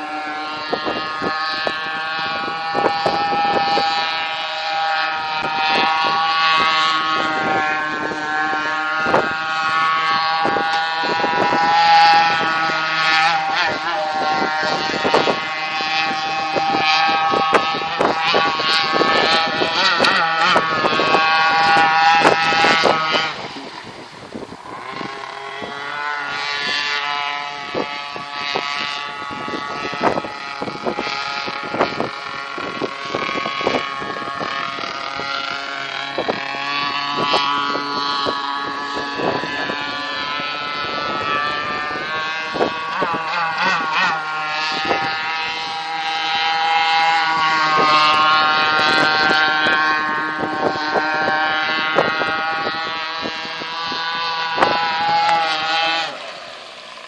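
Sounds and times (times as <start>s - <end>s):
motorboat engine running: 0.0s - 57.0s.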